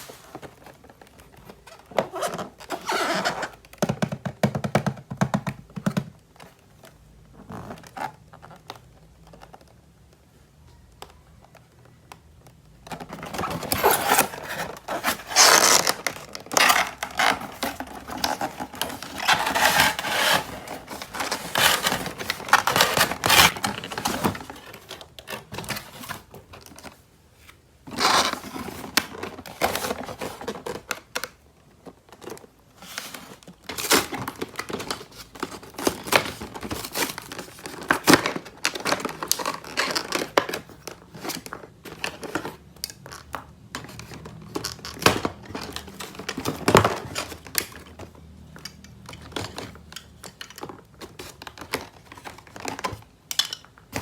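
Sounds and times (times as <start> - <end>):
packaging crinkling and tearing: 13.0 - 27.0, 27.9 - 31.4, 32.0 - 54.0.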